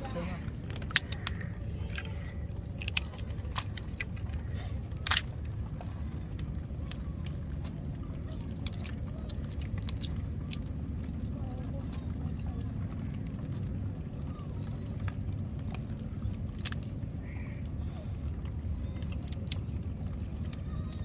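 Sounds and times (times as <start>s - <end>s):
steady low rumble: 0.0s - 21.0s
crab shells clattering: 0.4s - 5.4s.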